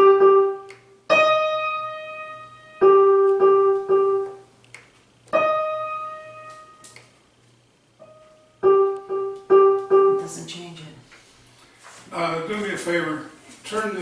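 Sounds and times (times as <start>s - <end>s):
digital piano notes: 0.0s - 4.5s, 5.3s - 7.0s, 8.0s - 10.5s.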